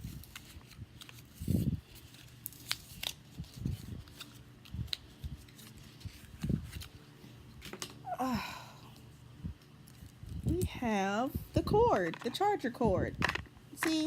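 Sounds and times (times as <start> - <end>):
packaging clicks and crinkles: 0.0 - 7.0.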